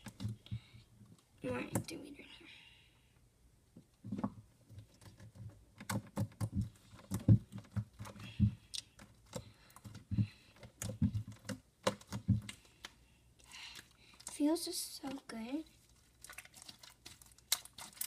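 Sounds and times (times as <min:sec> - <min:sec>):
hands squeezing sticky slime: 0:04.9 - 0:14.4, 0:15.0 - 0:18.0.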